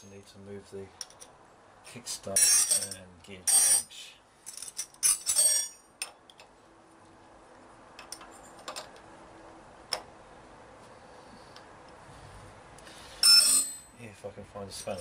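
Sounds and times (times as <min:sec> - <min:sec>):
metal hand tools clinking: 0:02.4 - 0:03.9, 0:04.5 - 0:05.8.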